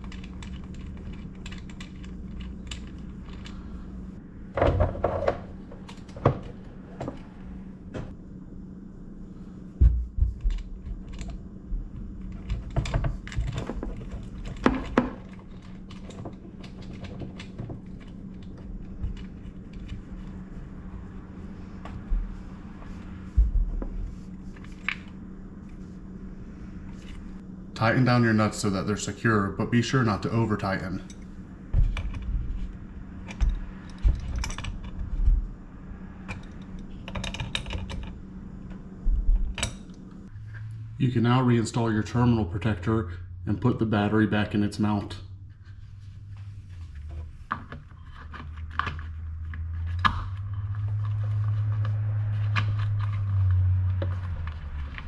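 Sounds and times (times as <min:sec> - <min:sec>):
steady low hum: 0:00.0 - 0:55.0
hardware clicking and clattering: 0:10.2 - 0:20.4, 0:30.6 - 0:35.5, 0:36.2 - 0:40.2.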